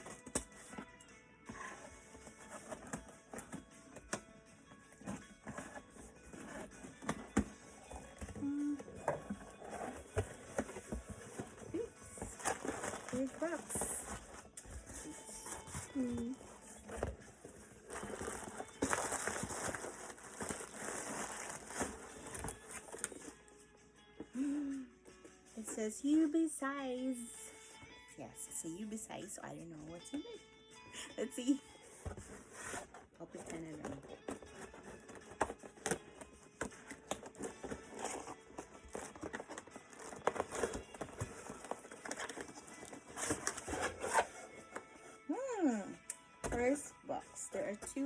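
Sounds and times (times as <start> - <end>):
cardboard box being unpacked: 0.0 - 0.9, 1.5 - 23.5, 31.8 - 45.2
packaging crinkling and tearing: 8.9 - 23.4, 36.8 - 44.7.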